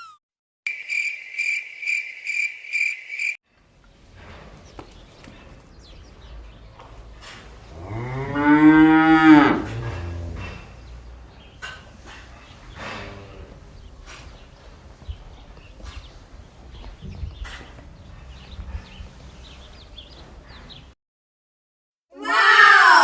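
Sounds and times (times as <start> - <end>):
cow mooing: 7.7 - 10.8, 12.8 - 13.7.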